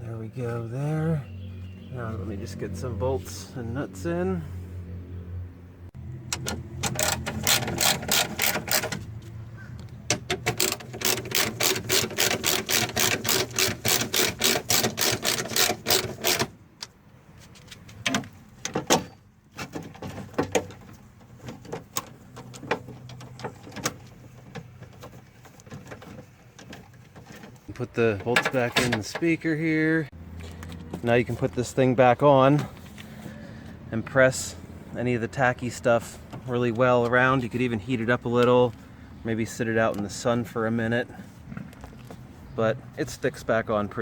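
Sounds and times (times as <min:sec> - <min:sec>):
ratchet wrench clicking: 0:06.9 - 0:08.9, 0:10.4 - 0:16.5.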